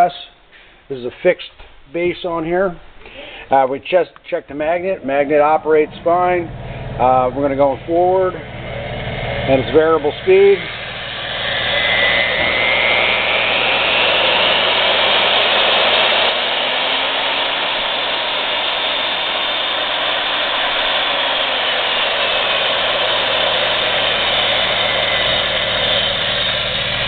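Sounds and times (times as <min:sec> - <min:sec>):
drill press motor whine: 0:05.9 - 0:27.0.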